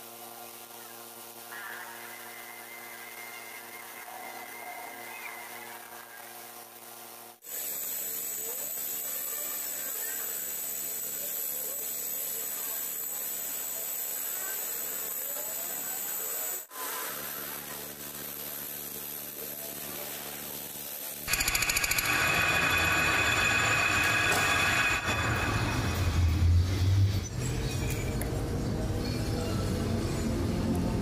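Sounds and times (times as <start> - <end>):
steady machine hum: 21.2 - 27.3
power tool grinding metal: 21.3 - 27.0.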